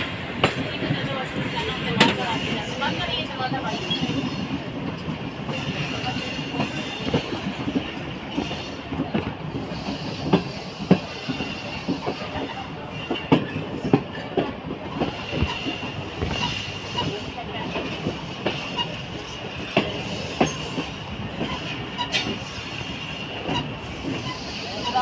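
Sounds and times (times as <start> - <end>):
train carriage rumbling on track: 0.0 - 25.0
wheels clacking over rail joints: 10.2 - 25.0.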